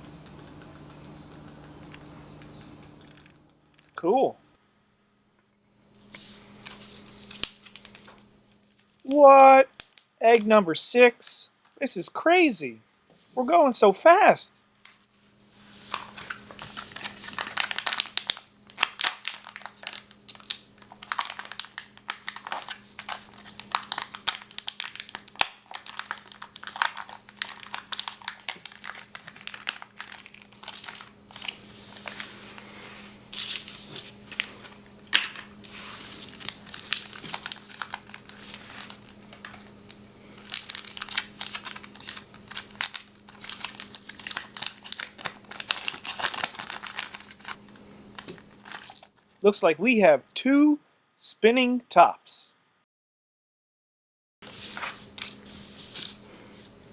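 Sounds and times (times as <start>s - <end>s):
wrapper crinkling and tearing: 6.0s - 10.5s, 15.7s - 49.4s.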